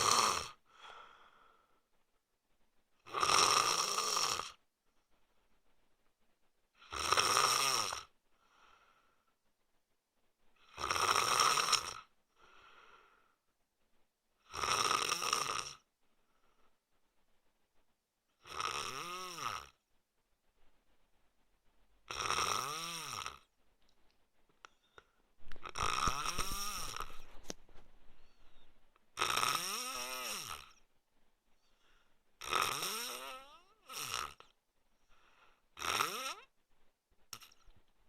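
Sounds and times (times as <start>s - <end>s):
man snoring: 0.0s - 0.6s, 3.1s - 4.6s, 6.8s - 8.1s, 10.6s - 12.1s, 14.4s - 15.8s, 18.4s - 19.8s, 22.1s - 23.5s, 25.6s - 27.3s, 29.2s - 30.8s, 32.4s - 34.5s, 35.8s - 36.5s
faint breaths: 0.0s - 2.9s, 8.1s - 10.7s, 12.3s - 14.1s, 16.0s - 18.0s, 23.3s - 29.1s, 29.9s - 32.4s, 33.2s - 38.0s.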